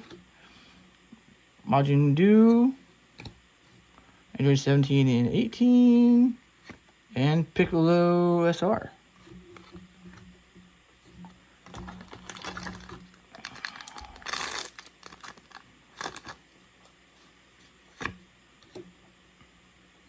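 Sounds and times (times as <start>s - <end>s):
foil wrapper crinkling: 11.6s - 16.4s
wrapper rasp: 11.9s - 16.4s.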